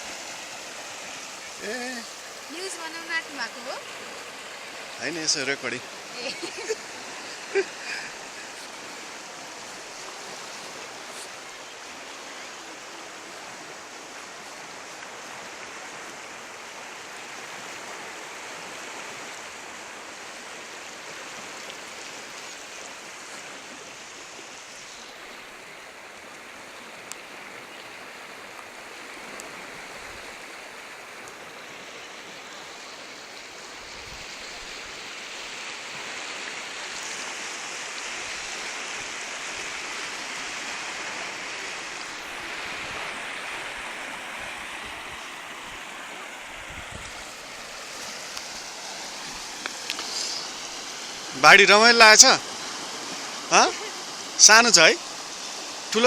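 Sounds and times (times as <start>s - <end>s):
river floodwater rushing: 0.0s - 56.0s.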